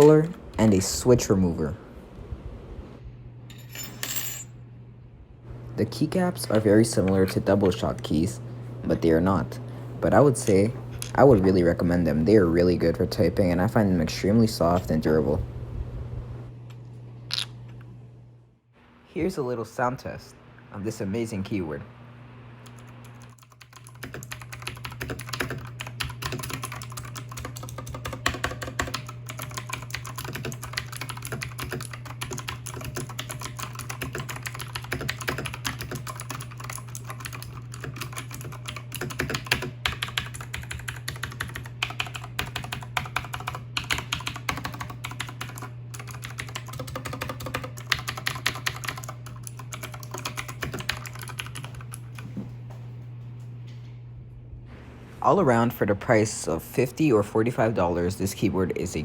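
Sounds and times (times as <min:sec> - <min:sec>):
steady low hum: 0:00.0 - 0:59.0
mechanical keyboard typing clicks: 0:22.7 - 0:52.0.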